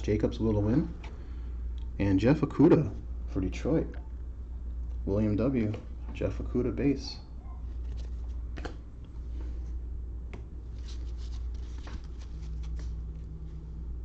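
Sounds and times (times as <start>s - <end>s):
steady low hum: 0.0s - 14.0s
cards being flipped: 7.7s - 8.8s, 10.7s - 13.3s.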